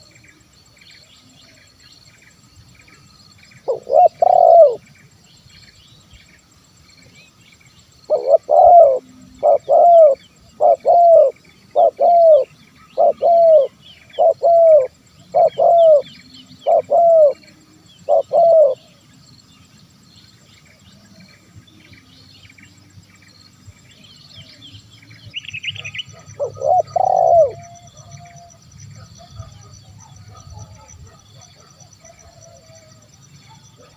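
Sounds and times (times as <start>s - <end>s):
faint small birds chirping: 0.0s - 33.9s
dove cooing: 3.6s - 4.8s, 8.1s - 19.0s, 25.6s - 33.9s.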